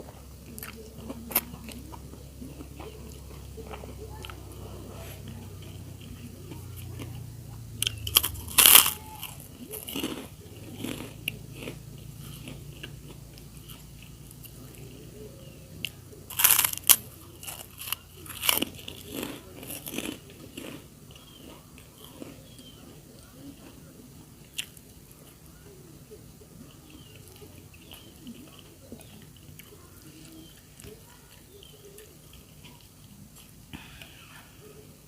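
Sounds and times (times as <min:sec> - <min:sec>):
person chewing: 0:00.0 - 0:14.9, 0:15.8 - 0:25.6, 0:26.5 - 0:34.1
crunchy bites of crackers: 0:07.8 - 0:14.9, 0:15.8 - 0:25.6.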